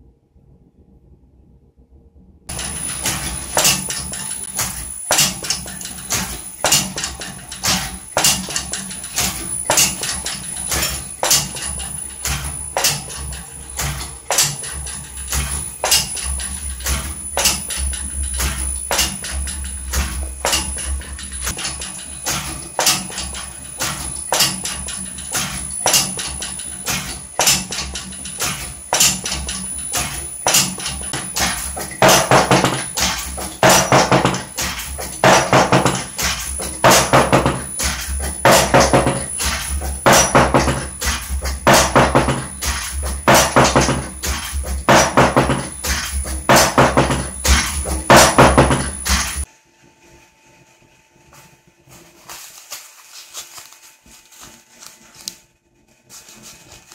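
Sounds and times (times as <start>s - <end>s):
steady low hum: 0.0s - 49.5s
sharp percussive hits: 2.5s - 49.5s
percussive beat: 30.5s - 49.5s.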